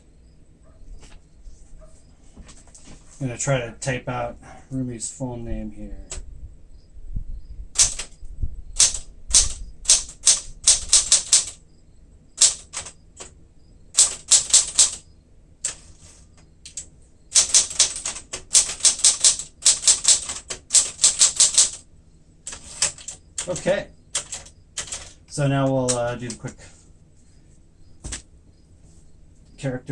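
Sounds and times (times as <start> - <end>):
manual typewriter keystrokes: 7.8 - 8.2, 8.8 - 11.6, 12.4 - 13.4, 14.0 - 15.0, 15.6 - 21.8, 22.5 - 26.6.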